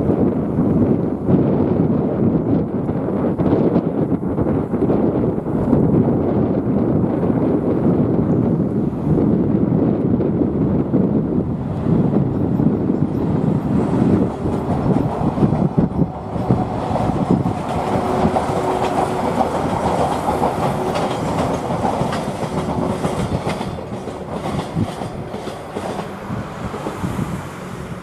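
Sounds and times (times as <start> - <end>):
freight train rumble: 0.0 - 28.0
train wheels clickety-clack: 13.0 - 27.2.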